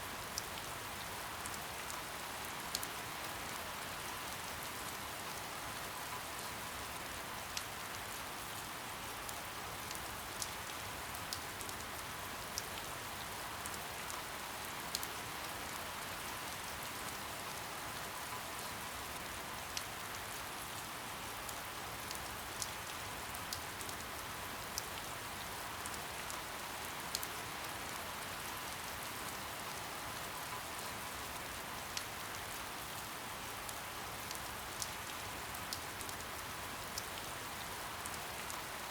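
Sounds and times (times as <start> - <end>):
soft rain falling: 0.0 - 38.9.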